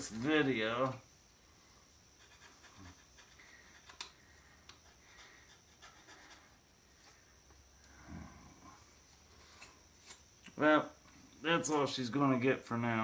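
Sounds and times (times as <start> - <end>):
small parts clicking and rubbing: 2.1 - 7.2.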